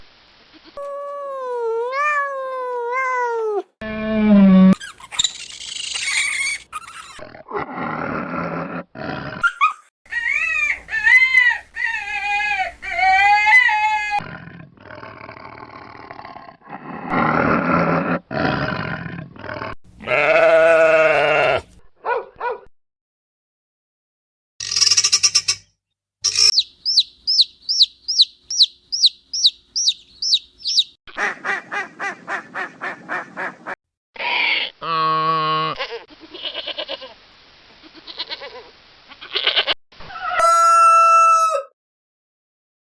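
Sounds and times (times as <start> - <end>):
farm animal calls: 20.0 - 21.7, 26.4 - 36.9
quick high repeated calls: 26.3 - 30.9.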